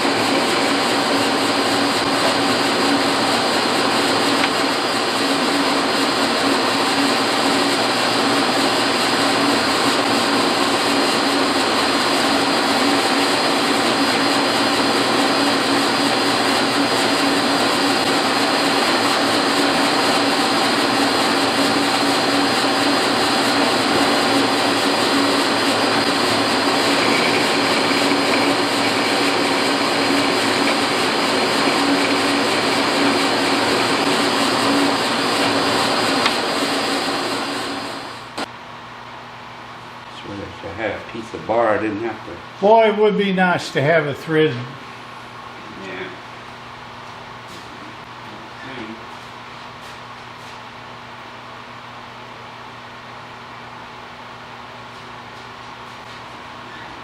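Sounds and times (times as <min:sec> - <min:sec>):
metal lathe running: 0:00.0 - 0:38.5.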